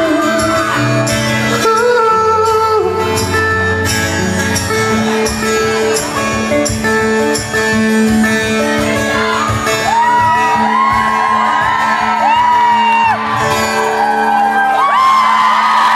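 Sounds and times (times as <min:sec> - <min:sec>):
live band with guitar: 0:00.0 - 0:15.9
audience shouts and whoops: 0:09.0 - 0:15.9.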